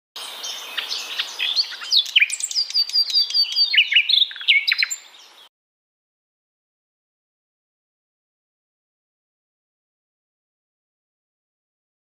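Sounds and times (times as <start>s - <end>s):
birds chirping: 0.2s - 5.5s
bird whistles: 0.8s - 5.1s.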